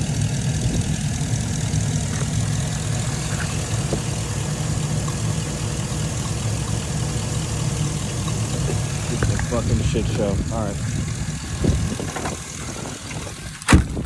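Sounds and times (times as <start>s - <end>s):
vehicle engine idling: 0.0s - 14.0s.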